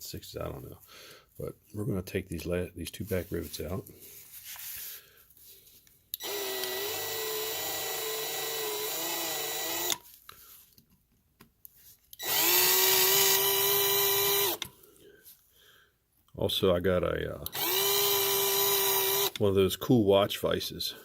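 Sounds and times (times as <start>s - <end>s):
small power drill running: 6.2s - 10.1s, 12.2s - 14.7s, 17.5s - 19.4s.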